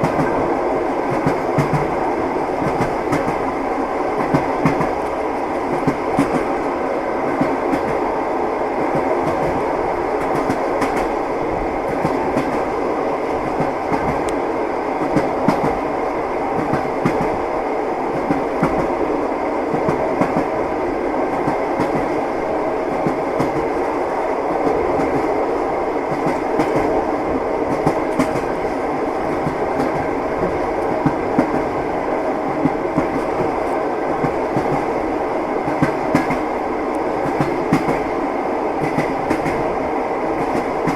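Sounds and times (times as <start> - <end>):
train wheels clickety-clack: 0.0 - 8.2, 8.8 - 40.9
train rumble: 0.0 - 40.9.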